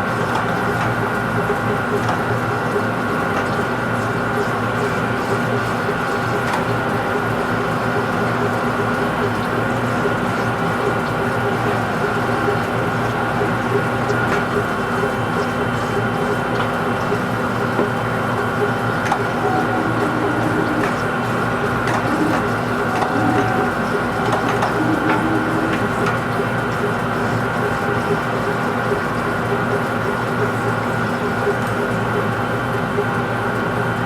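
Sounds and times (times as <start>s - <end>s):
lathe humming: 17.2s - 30.4s
high-pitched lathe whine: 18.4s - 28.8s.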